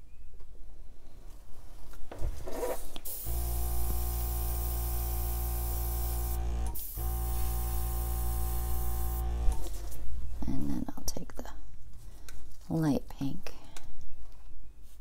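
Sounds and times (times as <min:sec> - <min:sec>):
hairdryer blowing: 0:03.1 - 0:09.8.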